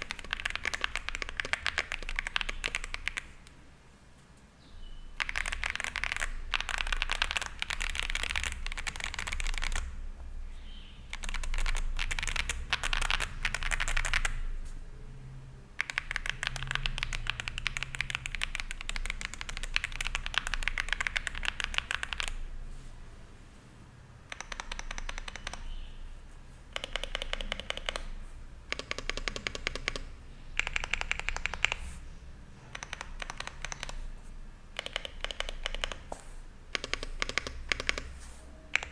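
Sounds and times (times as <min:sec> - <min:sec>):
mechanical keyboard typing: 0:00.0 - 0:03.5, 0:05.2 - 0:10.0, 0:11.1 - 0:14.4, 0:15.8 - 0:22.4, 0:24.2 - 0:25.7, 0:26.7 - 0:32.0, 0:32.6 - 0:34.1, 0:34.7 - 0:38.9.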